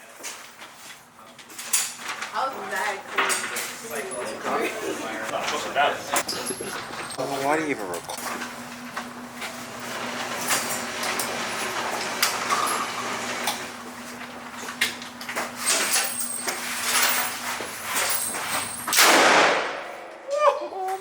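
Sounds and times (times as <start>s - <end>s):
loud burst: 19.0s - 20.0s.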